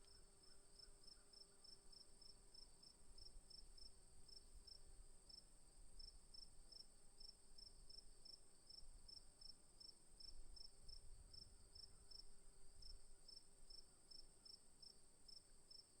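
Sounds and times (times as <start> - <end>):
cricket chirping: 0.0 - 16.0.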